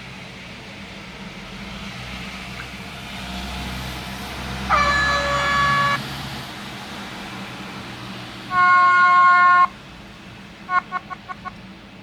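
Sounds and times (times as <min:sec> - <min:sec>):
air horn blast: 0:04.7 - 0:06.0, 0:08.5 - 0:09.7.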